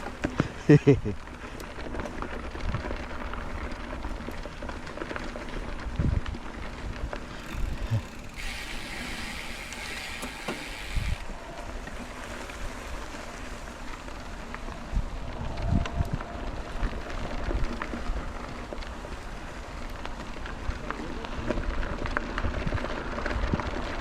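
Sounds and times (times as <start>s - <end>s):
bike tyres on dirt trail: 0.0s - 24.0s
wind on microphone: 10.8s - 11.8s, 14.7s - 18.4s.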